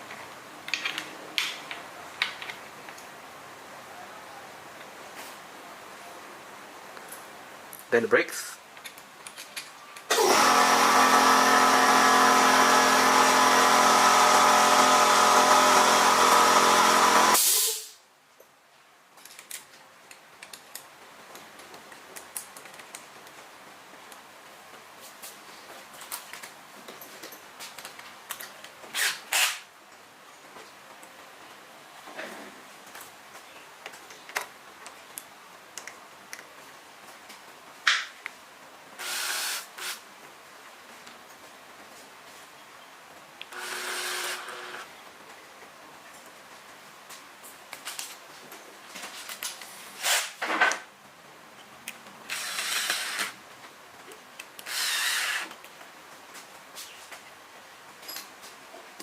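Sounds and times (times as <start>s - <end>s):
power tool motor running: 10.1s - 17.4s, 39.0s - 40.0s, 43.5s - 44.9s, 52.3s - 53.3s, 54.7s - 55.5s.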